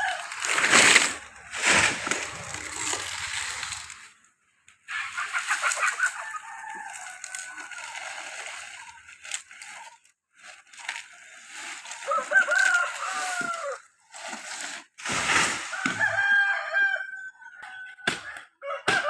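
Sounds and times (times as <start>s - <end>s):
rooster crowing: 12.0s - 13.9s, 15.7s - 18.0s.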